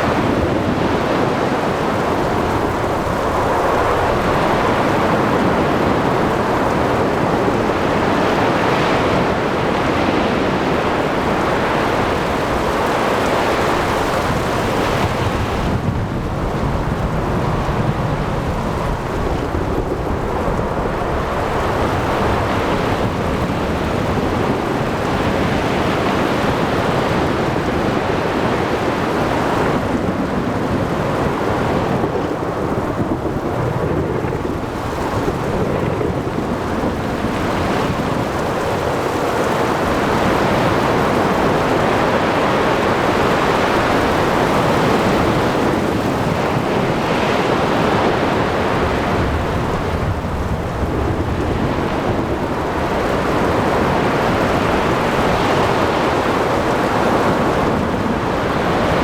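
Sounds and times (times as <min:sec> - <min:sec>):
wind: 0:00.0 - 0:59.0.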